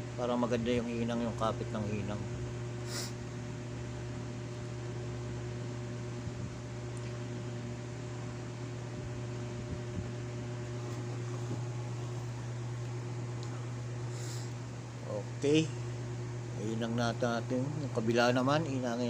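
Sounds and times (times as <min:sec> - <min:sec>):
electrical hum with hiss: 0:00.0 - 0:19.0.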